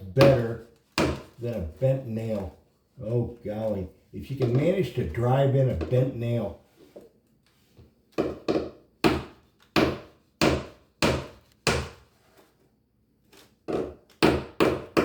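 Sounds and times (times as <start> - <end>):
hammer driving nails into wood: 0.2 - 1.4, 8.2 - 12.0, 13.7 - 15.0.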